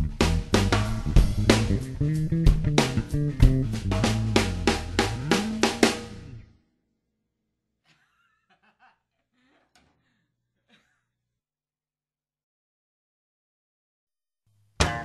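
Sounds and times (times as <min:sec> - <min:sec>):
rock music with drums and guitar: 0:00.0 - 0:06.4, 0:14.8 - 0:15.0.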